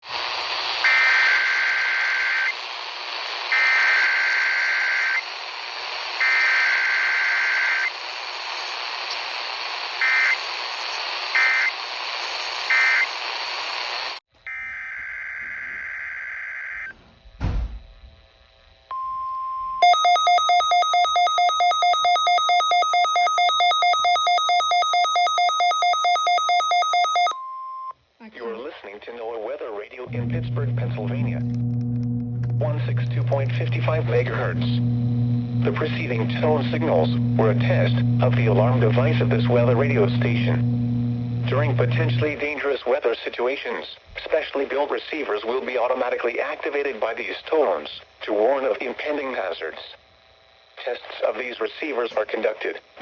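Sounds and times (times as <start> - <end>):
thump: 16.9 - 18.2
electronic alarm beeping: 18.9 - 27.9
radio hiss: 28.2 - 53.0.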